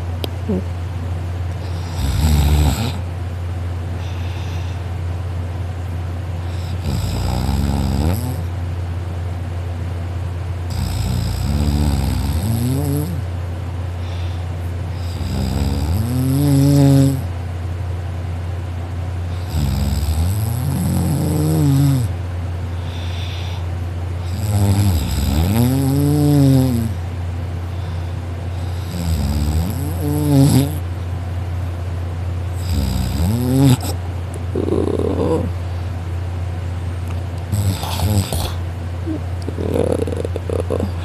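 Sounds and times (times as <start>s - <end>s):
person snoring loudly: 1.6s - 3.0s, 6.5s - 8.5s, 10.7s - 13.2s, 15.0s - 17.3s, 19.3s - 22.1s, 24.2s - 27.0s, 28.5s - 30.8s, 32.6s - 35.6s, 37.5s - 41.0s.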